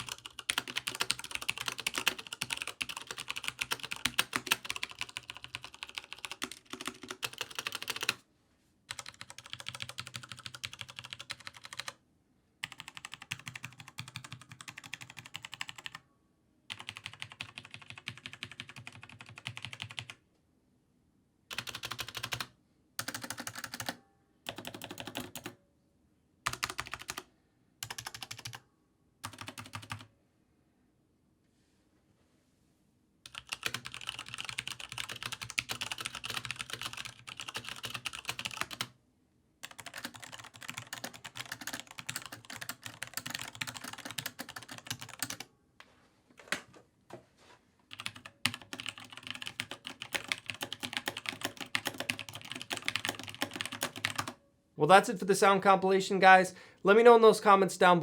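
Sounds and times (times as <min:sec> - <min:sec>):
typing on mechanical keyboard: 0:00.0 - 0:08.2, 0:08.9 - 0:12.0, 0:12.6 - 0:16.0, 0:16.7 - 0:20.2, 0:21.5 - 0:25.6, 0:26.5 - 0:28.6, 0:29.2 - 0:30.1, 0:33.3 - 0:38.9, 0:39.6 - 0:45.5, 0:47.9 - 0:54.4.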